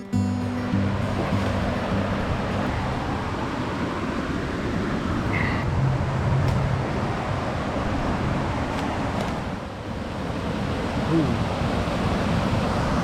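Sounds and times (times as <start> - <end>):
guitar music: 0.0 - 3.8
waterfall rushing: 0.0 - 8.7.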